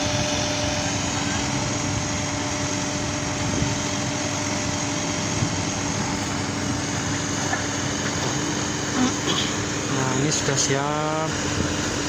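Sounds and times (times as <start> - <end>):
heavy machinery diesel engine: 0.0 - 12.0.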